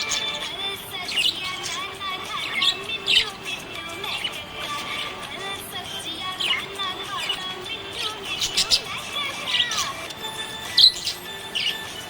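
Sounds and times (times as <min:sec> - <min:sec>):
budgerigar chirping: 0:00.0 - 0:05.3, 0:06.0 - 0:12.0.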